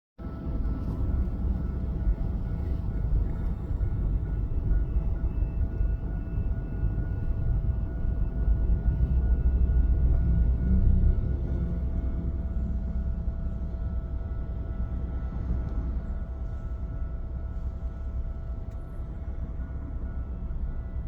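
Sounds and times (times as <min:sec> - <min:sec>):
steady low rumble: 0:00.2 - 0:21.0.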